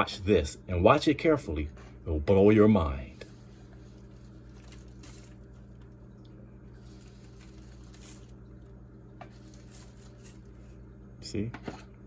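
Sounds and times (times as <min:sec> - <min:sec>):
low electrical hum: 0:00.0 - 0:12.0
soft rustling and scraping: 0:06.8 - 0:10.8.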